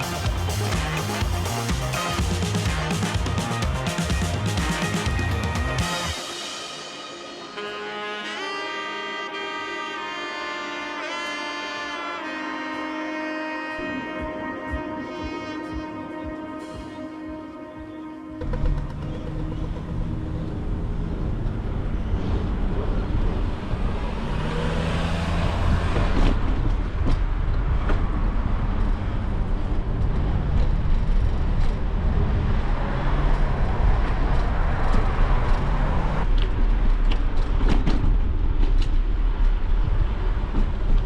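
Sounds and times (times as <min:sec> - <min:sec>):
tyre and road noise: 0:00.0 - 0:08.4, 0:13.8 - 0:41.0
passing traffic: 0:00.0 - 0:41.0
wind rushing over microphone: 0:19.9 - 0:41.0.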